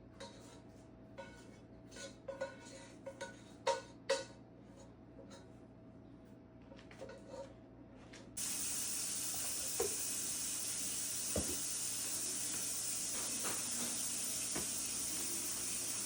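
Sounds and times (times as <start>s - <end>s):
steady hiss: 8.4s - 16.0s.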